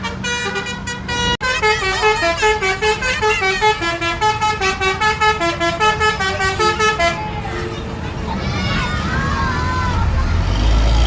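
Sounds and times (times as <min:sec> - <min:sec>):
bus musical horn tune: 0:00.0 - 0:08.2
low engine rumble: 0:00.0 - 0:11.0.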